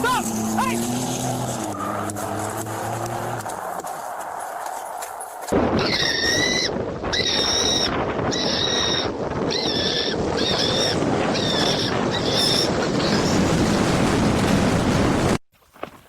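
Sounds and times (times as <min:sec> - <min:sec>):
loud rough rumbling: 0:05.5 - 0:15.4.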